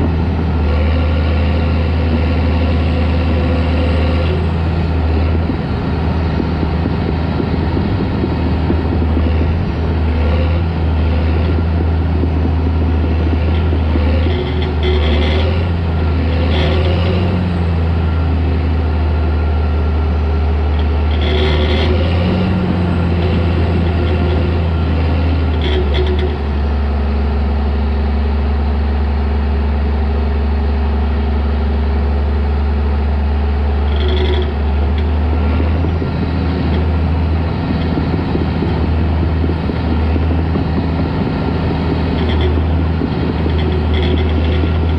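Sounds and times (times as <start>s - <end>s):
bulldozer diesel engine drone: 0.0s - 44.9s
machine squeals and clanks: 12.7s - 26.9s, 33.7s - 44.9s.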